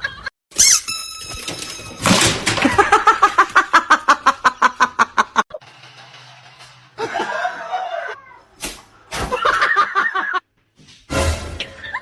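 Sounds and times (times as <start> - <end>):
person laughing: 2.6 - 5.5, 7.0 - 8.2.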